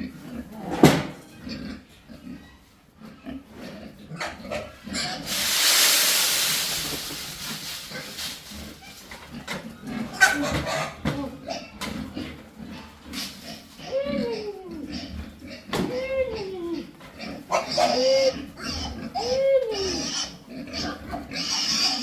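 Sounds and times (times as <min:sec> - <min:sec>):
pigs grunting: 0:00.0 - 0:05.5, 0:07.0 - 0:22.0
loud hiss: 0:05.2 - 0:08.6.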